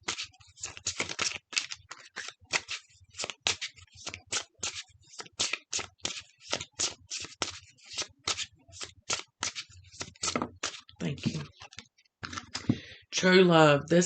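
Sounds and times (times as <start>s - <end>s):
cards shuffled by hand: 0.0s - 12.8s.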